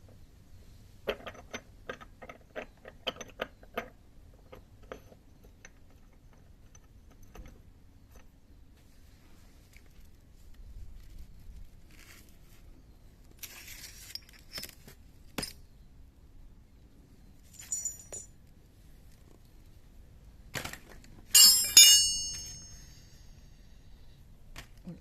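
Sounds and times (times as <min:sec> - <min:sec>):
metal tools clinking: 0:17.5 - 0:18.4, 0:21.3 - 0:23.5.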